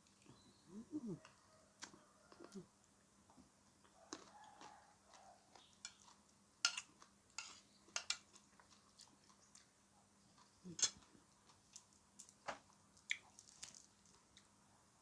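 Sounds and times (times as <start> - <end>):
chewing and crunching food: 1.1 - 14.7.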